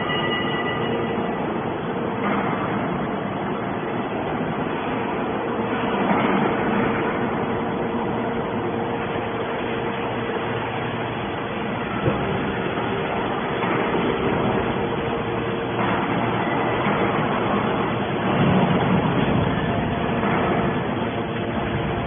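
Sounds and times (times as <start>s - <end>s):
faint constant hum: 0.0s - 22.0s.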